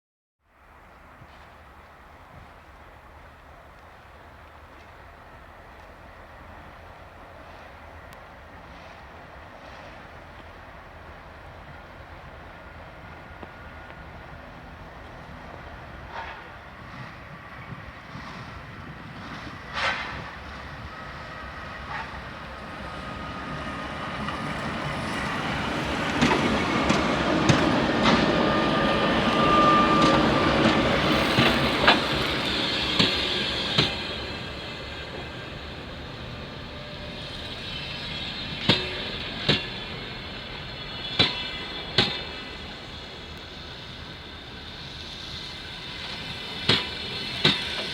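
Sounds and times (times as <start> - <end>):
locomotive and train rolling past: 0.5 - 47.9
brake squeal: 27.7 - 47.9
wheels clicking over rail joints: 45.6 - 47.9.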